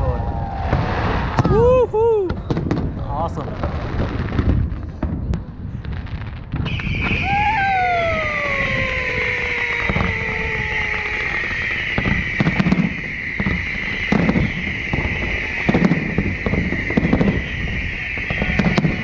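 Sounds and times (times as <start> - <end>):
falling firework whistle: 0.0 - 2.5, 6.5 - 19.0
fireworks crackling and popping: 0.0 - 19.0.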